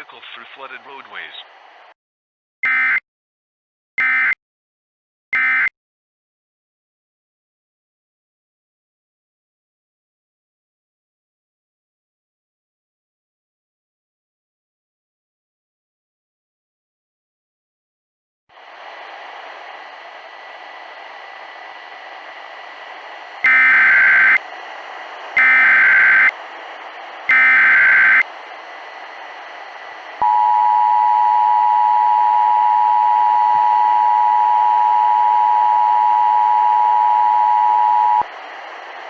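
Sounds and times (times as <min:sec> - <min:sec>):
radio hiss: 0:00.0 - 0:01.6.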